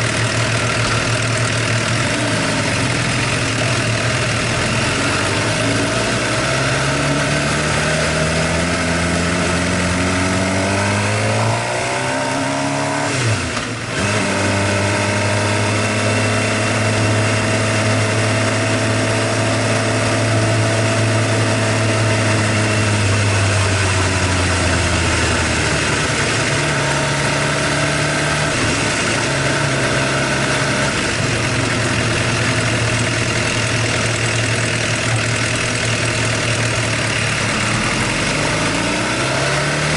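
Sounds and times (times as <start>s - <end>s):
motorcycle engine revving: 0.0s - 39.9s
engine tappet noise: 28.5s - 39.9s.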